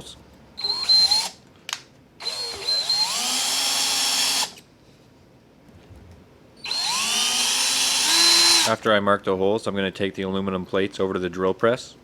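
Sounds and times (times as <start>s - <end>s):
power drill whining: 0.6s - 1.4s, 2.2s - 4.6s, 6.6s - 8.8s.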